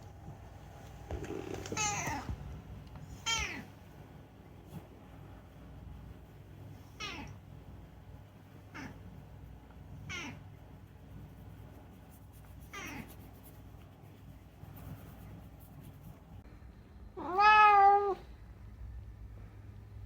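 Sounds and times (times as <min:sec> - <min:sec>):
cat meowing: 0:10.1 - 0:10.4, 0:17.2 - 0:18.2.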